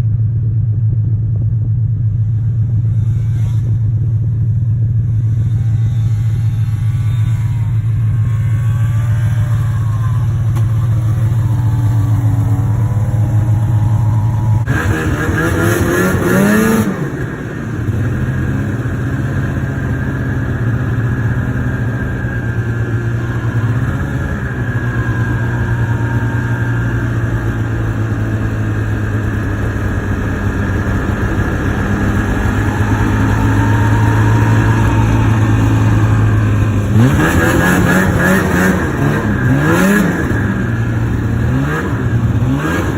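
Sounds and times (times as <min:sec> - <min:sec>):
snowmobile engine revving: 0:02.3 - 0:42.9.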